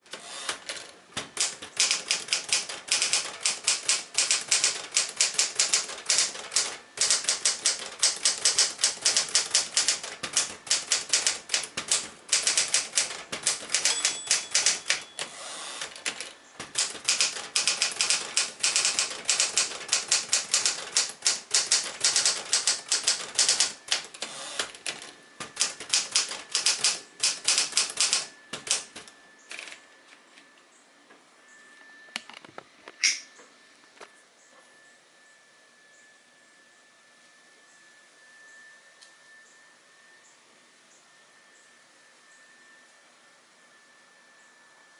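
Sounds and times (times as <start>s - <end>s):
manual typewriter clacking: 0.0s - 29.8s.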